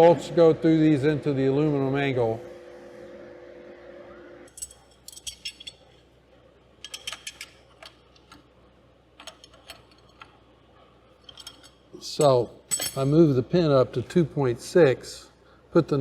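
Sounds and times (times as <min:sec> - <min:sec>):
steady hum: 0:00.0 - 0:16.0
metal tool parts clinking: 0:04.5 - 0:05.9, 0:06.8 - 0:07.9, 0:11.2 - 0:13.3.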